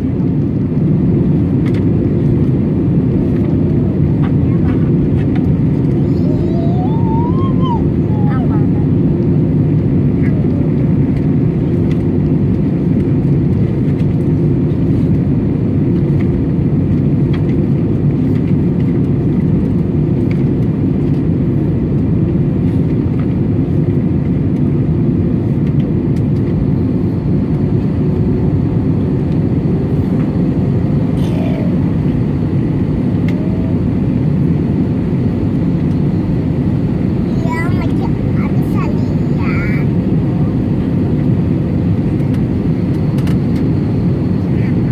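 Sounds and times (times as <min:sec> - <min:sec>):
airplane cabin engine drone: 0:00.0 - 0:44.9.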